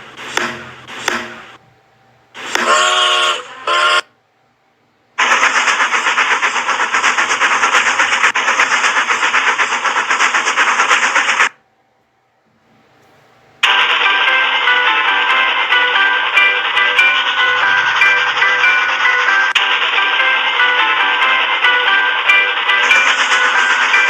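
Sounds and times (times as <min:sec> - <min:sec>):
steam train whistle: 0:02.4 - 0:04.1, 0:13.6 - 0:24.0
rapid sharp rattle: 0:05.2 - 0:11.5, 0:22.5 - 0:24.0.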